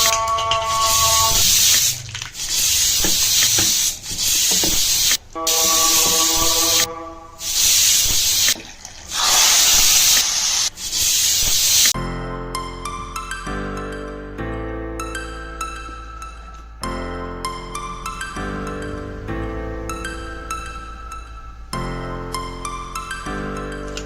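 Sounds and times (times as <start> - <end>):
clicks: 0.0 - 6.9
cooking hissing: 0.0 - 12.0.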